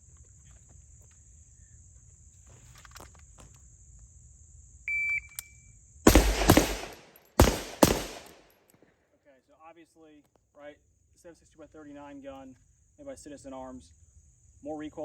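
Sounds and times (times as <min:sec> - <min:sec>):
rifle shots: 0:06.1 - 0:08.5.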